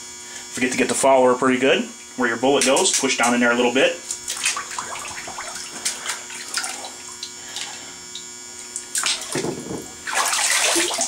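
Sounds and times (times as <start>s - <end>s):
washcloth scrubbing: 2.6s - 7.9s, 8.9s - 11.0s
water splashing and dripping: 4.3s - 7.3s, 8.7s - 11.0s.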